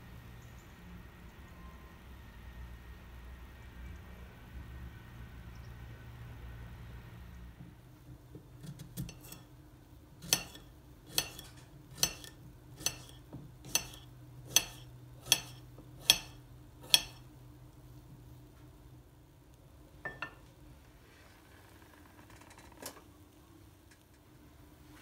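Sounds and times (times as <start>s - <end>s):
faint steady hum: 0.0s - 25.0s
utensil clinking against dish: 9.0s - 9.5s, 10.2s - 17.2s.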